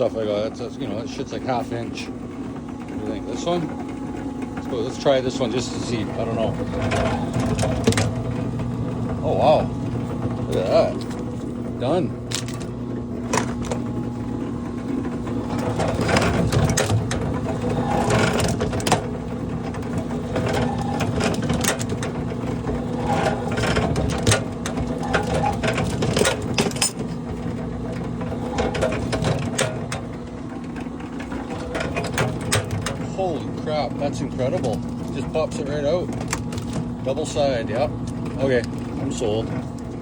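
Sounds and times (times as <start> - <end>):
wire stripping machine motor hum: 0.0 - 40.0
clicks and knocks from rollers: 4.4 - 8.6, 14.8 - 40.0.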